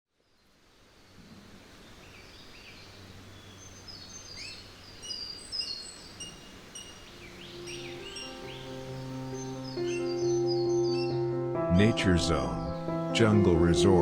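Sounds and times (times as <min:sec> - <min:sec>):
faint outdoor hiss: 0:00.1 - 0:14.0
low sustained music tones: 0:00.2 - 0:14.0
birds chirping and whistling: 0:02.0 - 0:11.5.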